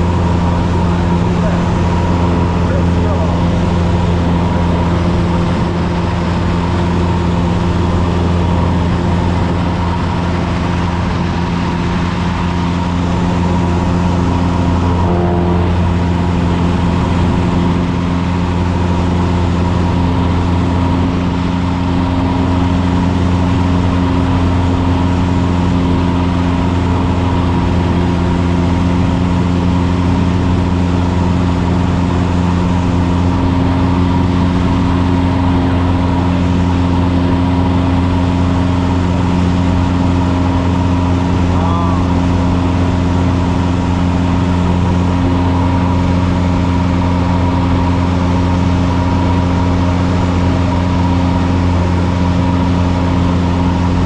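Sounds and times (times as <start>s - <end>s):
airplane engine and propeller drone: 0.0s - 54.0s.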